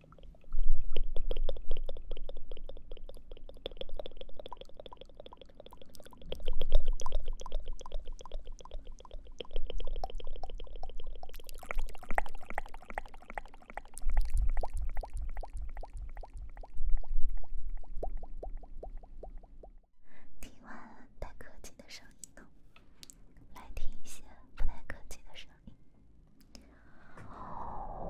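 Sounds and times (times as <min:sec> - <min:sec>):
wet tongue and lip clicks: 0:00.0 - 0:19.8, 0:23.0 - 0:23.2.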